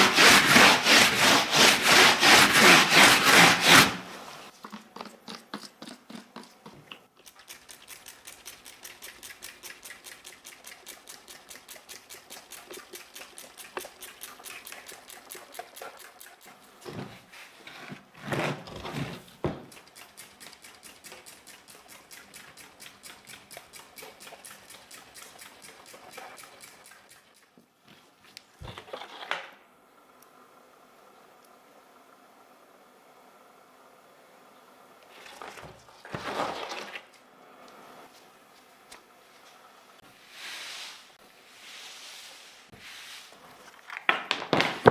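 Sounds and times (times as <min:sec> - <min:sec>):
scrubbing keyboard parts: 0:00.0 - 0:27.6.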